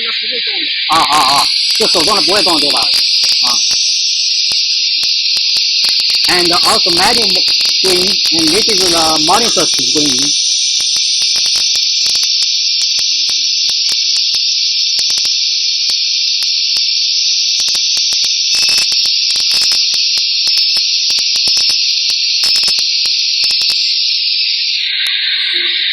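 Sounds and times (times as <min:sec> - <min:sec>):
compressed air hissing: 0:01.0 - 0:14.3
machine clicks and ticks: 0:01.5 - 0:24.0.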